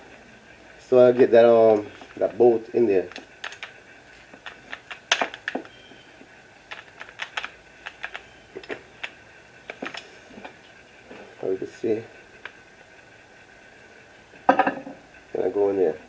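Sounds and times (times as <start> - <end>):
metal bracket being handled: 1.0 - 5.8, 6.6 - 10.6
tools clicking and tapping: 3.0 - 6.0, 6.7 - 10.6.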